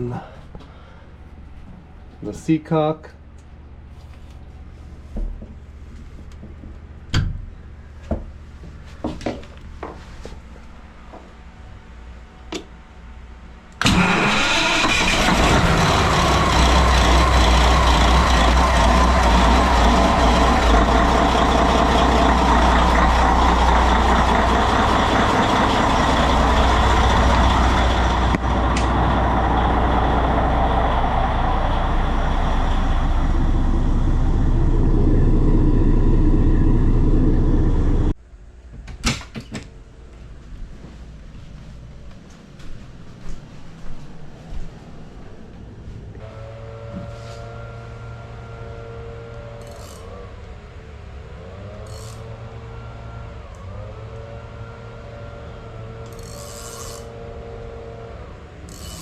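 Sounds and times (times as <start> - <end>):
loud diesel engine idling: 13.9 - 38.1.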